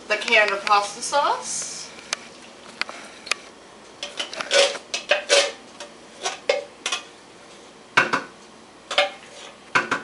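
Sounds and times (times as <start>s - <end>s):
metal utensil scraping cookware: 4.0s - 5.6s.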